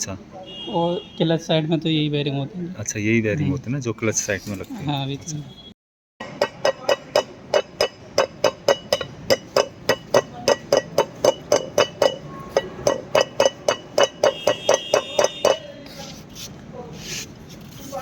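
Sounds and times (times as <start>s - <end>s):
hammering on metal: 6.2s - 15.8s.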